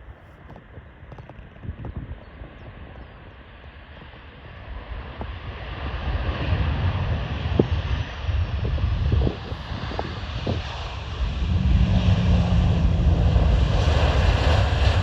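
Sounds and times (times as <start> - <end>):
wind buffeting microphone: 0.1 - 15.0
jet engines rumbling: 4.2 - 15.0.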